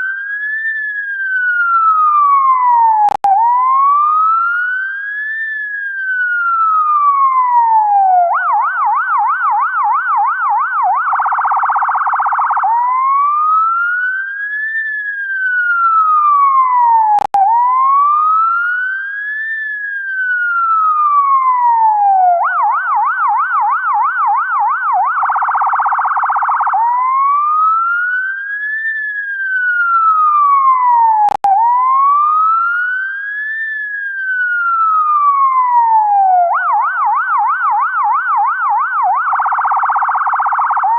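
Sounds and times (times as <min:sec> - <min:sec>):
ambulance siren: 0:00.0 - 0:40.9
click: 0:03.1 - 0:03.3, 0:31.3 - 0:31.5.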